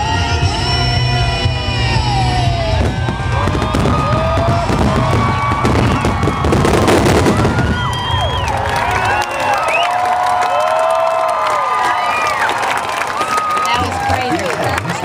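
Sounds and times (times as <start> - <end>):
crowd screaming and whooping: 0.0 - 15.0
fireworks booming and crackling: 1.2 - 9.2.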